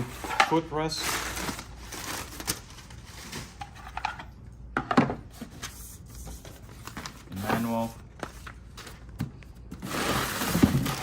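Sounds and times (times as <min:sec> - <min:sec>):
packaging rustling: 0:00.1 - 0:03.9.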